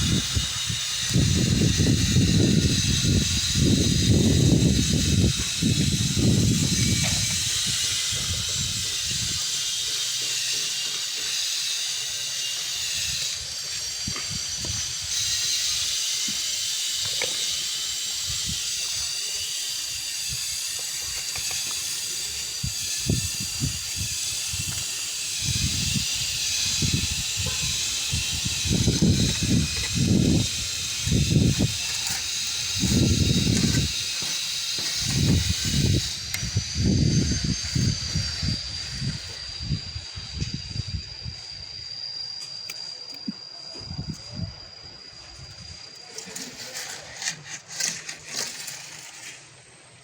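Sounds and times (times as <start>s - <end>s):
strong wind buffeting microphone: 0.0s - 9.6s, 22.3s - 41.8s, 43.8s - 45.8s.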